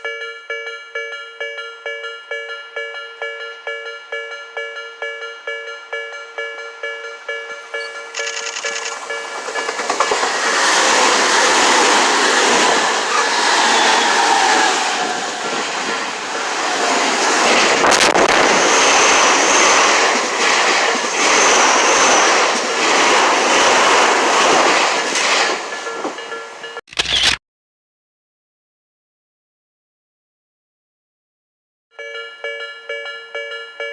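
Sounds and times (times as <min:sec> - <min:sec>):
level crossing warning bell: 0:00.0 - 0:13.2, 0:25.5 - 0:26.8, 0:31.9 - 0:33.9
train wheels clattering over rail joints: 0:07.8 - 0:26.7.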